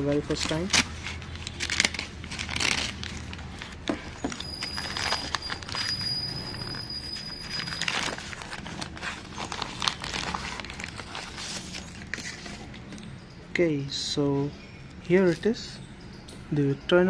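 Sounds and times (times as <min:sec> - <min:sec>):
packaging rustling and crinkling: 0:00.0 - 0:12.9.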